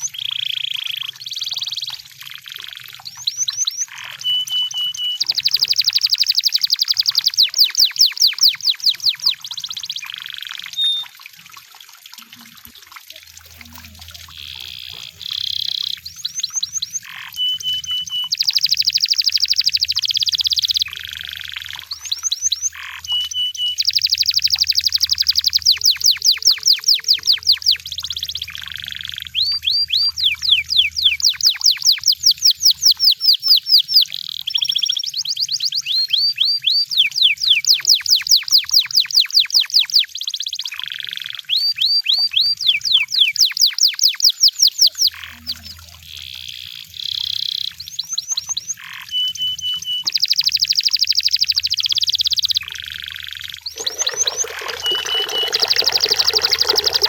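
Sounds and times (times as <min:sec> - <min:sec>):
canary singing: 0:02.7 - 0:11.1, 0:13.7 - 0:57.0.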